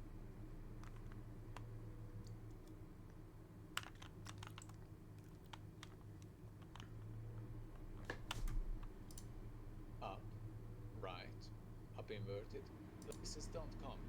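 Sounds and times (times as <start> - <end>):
steady low hum: 0.0 - 14.0
puzzle cube plastic clicks: 0.8 - 2.8, 3.7 - 9.2.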